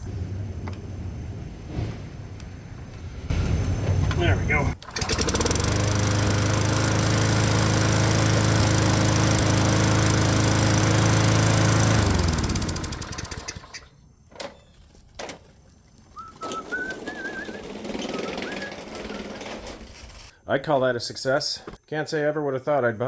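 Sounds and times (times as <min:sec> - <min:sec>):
lawn mower engine running: 0:03.6 - 0:13.9, 0:16.4 - 0:20.3
bird singing: 0:13.8 - 0:15.0, 0:16.1 - 0:19.7.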